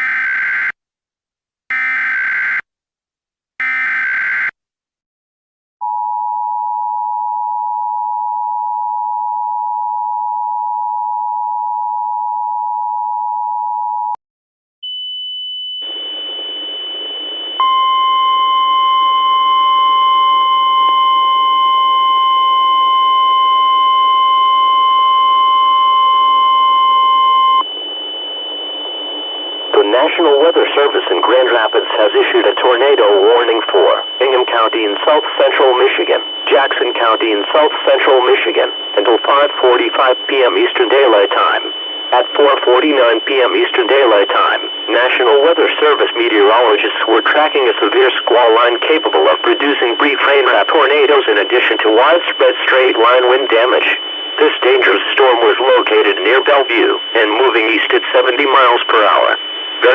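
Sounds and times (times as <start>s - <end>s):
weather radio alarm tone: 0.0s - 0.7s, 1.7s - 2.6s, 3.6s - 4.5s, 14.9s - 59.9s
radio hiss: 29.8s - 59.9s.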